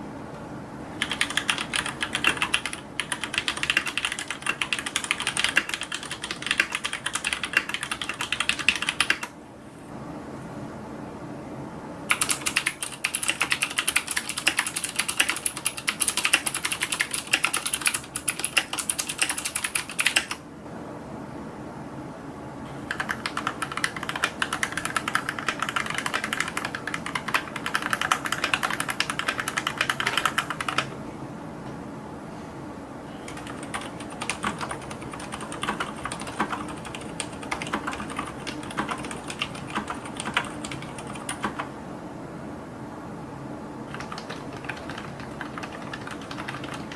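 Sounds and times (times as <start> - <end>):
fast typing on keyboard: 1.0 - 9.4, 12.1 - 20.4, 22.9 - 30.9, 33.3 - 41.7, 43.9 - 46.9.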